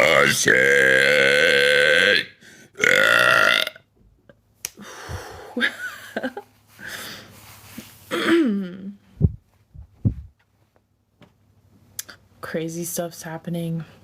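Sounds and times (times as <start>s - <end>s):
wheezy breaths: 6.8s - 7.9s
woman clearing throat: 8.1s - 8.9s
low thumps: 9.2s - 10.4s.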